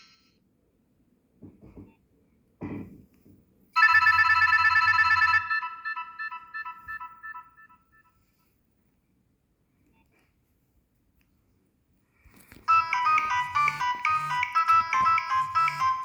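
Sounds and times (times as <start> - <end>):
phone ringtone: 3.8 - 8.0, 12.7 - 16.0.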